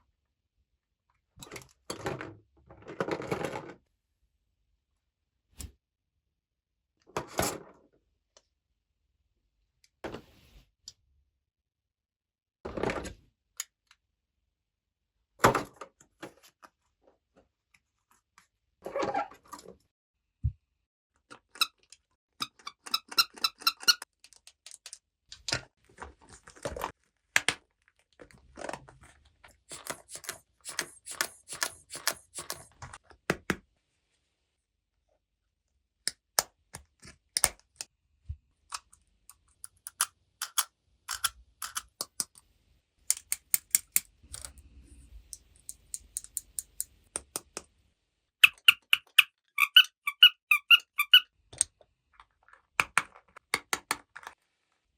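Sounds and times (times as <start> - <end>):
plastic toy pieces clicking: 38.8 - 42.4.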